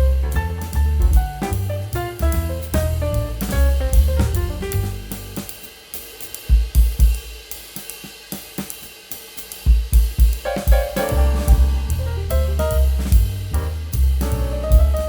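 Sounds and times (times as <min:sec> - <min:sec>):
bass: 0:00.0 - 0:05.6, 0:10.4 - 0:15.0
drum kit beat with cymbals: 0:00.0 - 0:15.0.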